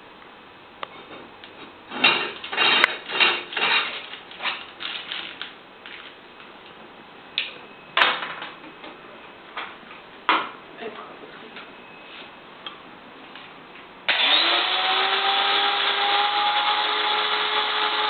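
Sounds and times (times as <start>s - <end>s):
clattering and rattling: 1.9s - 5.5s.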